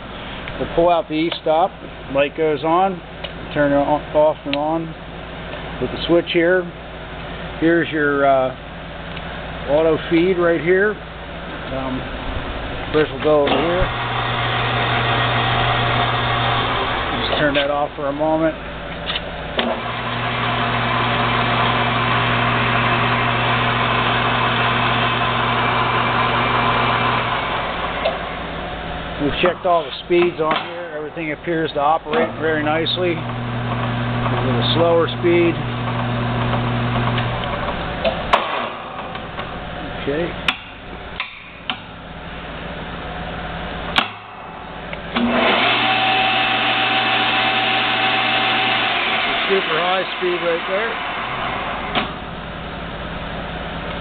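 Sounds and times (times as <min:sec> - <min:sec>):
metal lathe running: 0:12.8 - 0:18.9, 0:19.6 - 0:37.6, 0:44.7 - 0:52.4.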